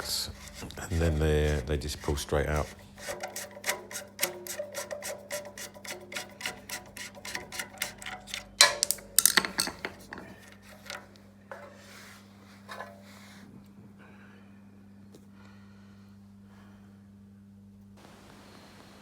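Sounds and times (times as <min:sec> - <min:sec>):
low electrical hum: 0:00.0 - 0:19.0
knocks and clatter: 0:03.0 - 0:11.7.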